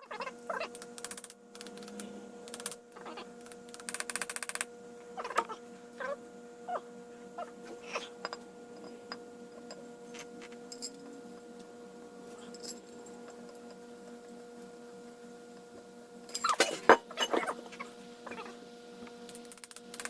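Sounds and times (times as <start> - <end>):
electrical hum: 0.0 - 20.0.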